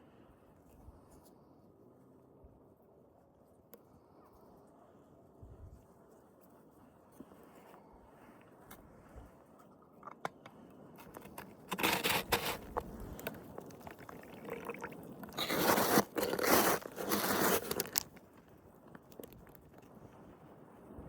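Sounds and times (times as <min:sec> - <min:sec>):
snow crunching and scraping: 0:11.7 - 0:13.5, 0:15.4 - 0:18.1.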